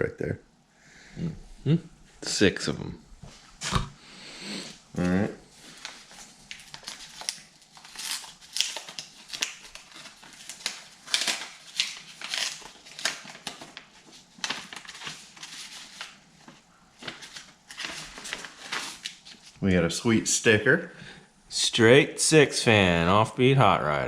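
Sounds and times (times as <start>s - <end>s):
paper packaging rustling and tearing: 5.6s - 19.6s.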